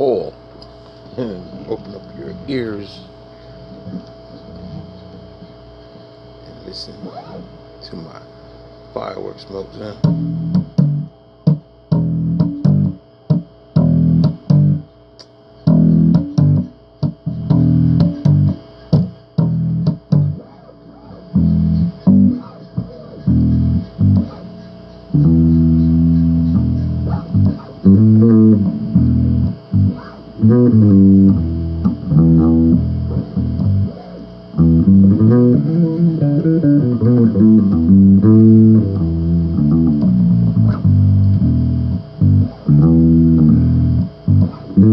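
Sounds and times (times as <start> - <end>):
bass guitar riffing: 9.8 - 15.0, 15.6 - 44.9.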